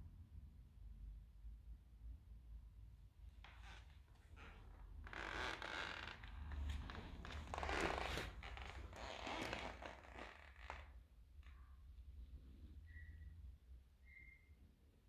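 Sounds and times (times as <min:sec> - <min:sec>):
wooden floorboards creaking: 0:03.4 - 0:11.0.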